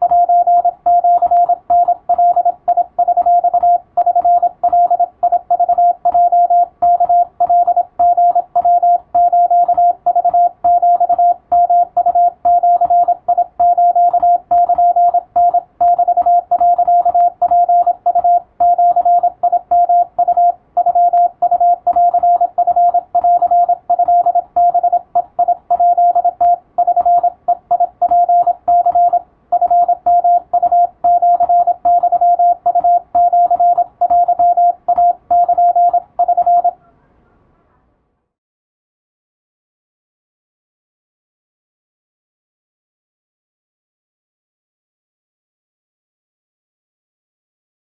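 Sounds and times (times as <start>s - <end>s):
morse code tone: 0.0s - 36.8s.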